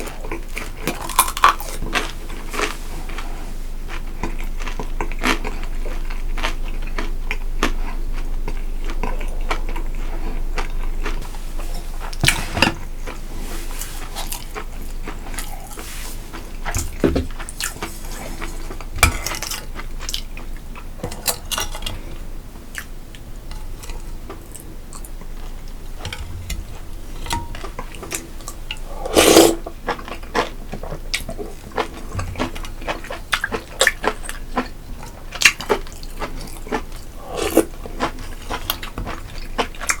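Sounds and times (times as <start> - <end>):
person chewing food: 0.0 - 40.0.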